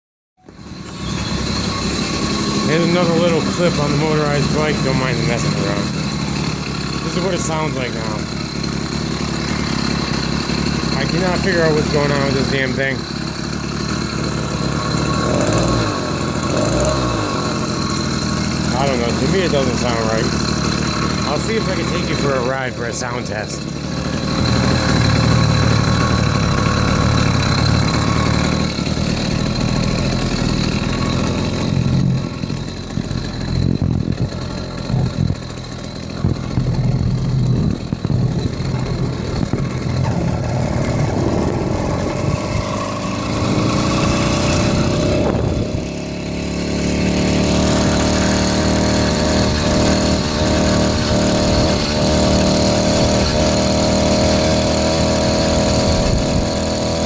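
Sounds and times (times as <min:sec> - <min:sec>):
two-stroke engine running: 0:00.4 - 0:57.0.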